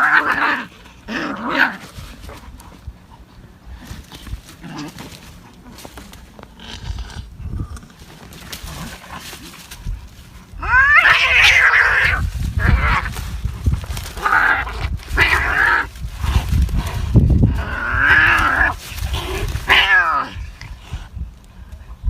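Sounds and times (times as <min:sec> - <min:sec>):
cats fighting screeching and yowling: 0:00.0 - 0:02.8, 0:08.0 - 0:21.1.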